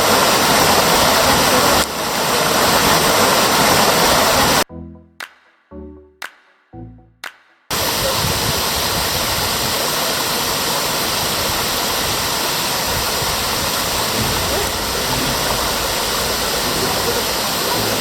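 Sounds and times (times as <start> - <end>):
waterfall rushing: 0.0 - 4.6, 7.7 - 18.0
background music: 4.6 - 7.7, 14.1 - 18.0.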